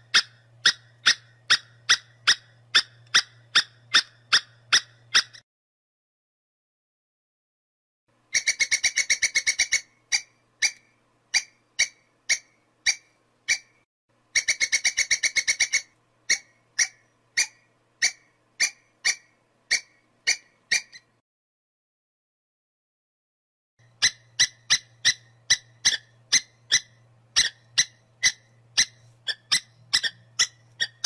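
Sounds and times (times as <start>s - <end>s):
squirrel chattering chirps: 0.1s - 5.4s, 8.3s - 13.8s, 14.4s - 21.1s, 23.9s - 31.0s.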